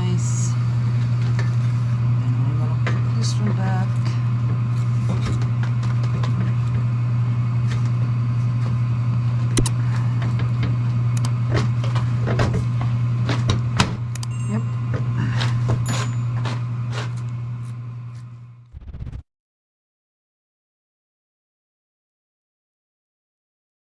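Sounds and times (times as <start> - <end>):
furnace blower fan hum: 0.0 - 18.7.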